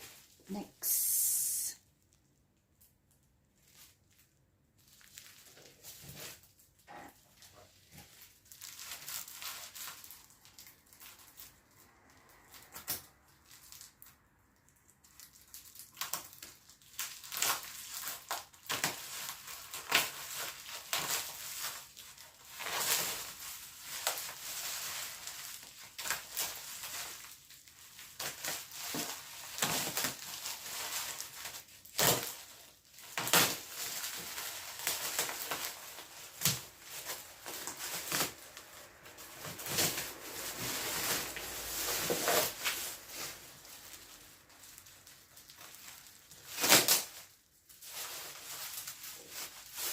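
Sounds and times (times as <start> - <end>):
packaging crinkling and rustling: 2.0 - 49.9.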